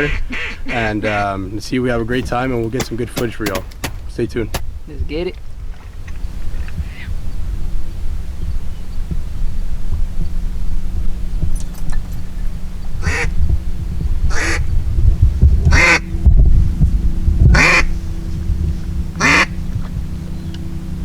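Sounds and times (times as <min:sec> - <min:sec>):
duck quacking: 0:00.0 - 0:01.4, 0:13.0 - 0:13.3, 0:14.3 - 0:14.7, 0:15.7 - 0:16.1, 0:17.5 - 0:18.0, 0:19.2 - 0:19.6
low hum and rumble: 0:00.0 - 0:21.0.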